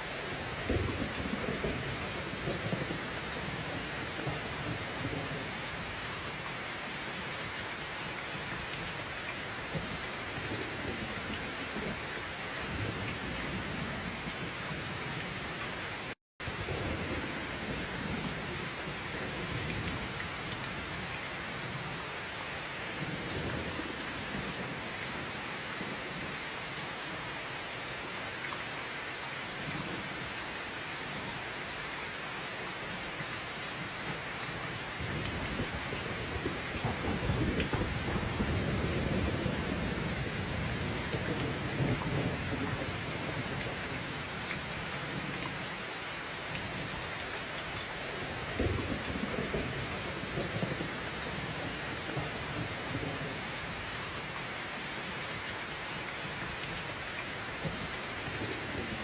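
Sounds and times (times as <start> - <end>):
heavy rain: 0.0 - 59.0
low thunder rumbles: 35.0 - 44.0, 48.4 - 53.4.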